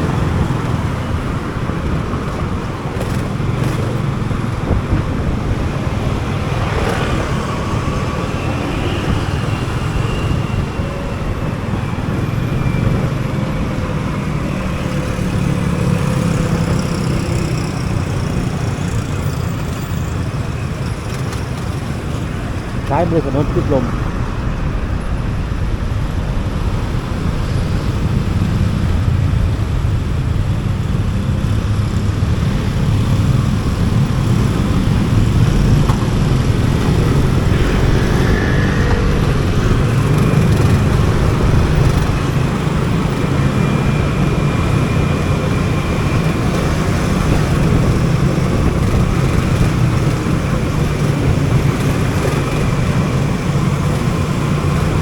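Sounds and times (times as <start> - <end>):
motorcycle engine rumbling: 0.0 - 55.0
road noise: 0.0 - 55.0.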